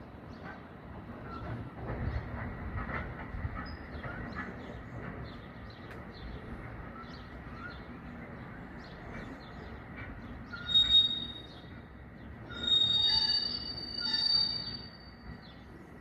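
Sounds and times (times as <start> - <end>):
freight train rumbling: 0.0 - 16.0
train wheels squealing: 0.4 - 3.0, 10.0 - 15.7.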